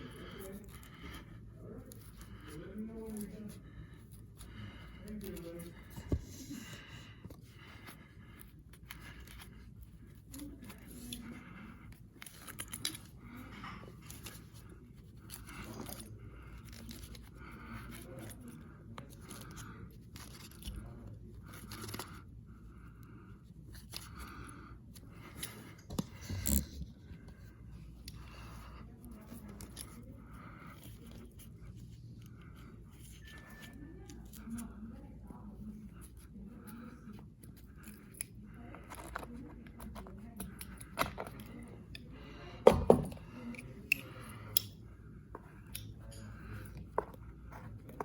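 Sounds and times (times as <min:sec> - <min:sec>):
carpet tool clicks and scrapes: 0:24.9 - 0:31.9.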